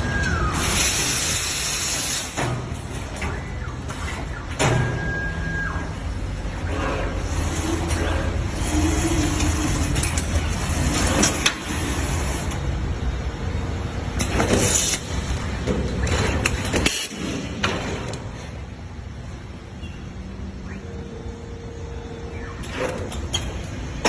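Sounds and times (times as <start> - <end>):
packaging machine humming: 0.0 - 17.5
machine hisses: 0.4 - 2.4.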